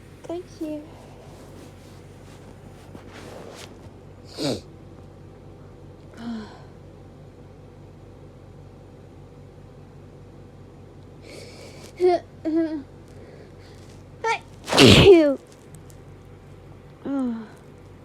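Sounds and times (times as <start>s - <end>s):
quiet breathy sound: 0.6s - 4.7s
woman sneezing: 14.7s - 15.4s.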